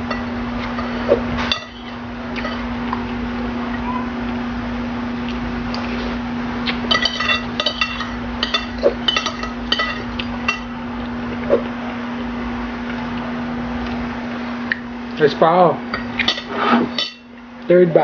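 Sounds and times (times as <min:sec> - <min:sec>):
steady low hum: 0:00.0 - 0:18.0
cutlery clinking against a dish: 0:06.9 - 0:10.7, 0:16.0 - 0:17.3.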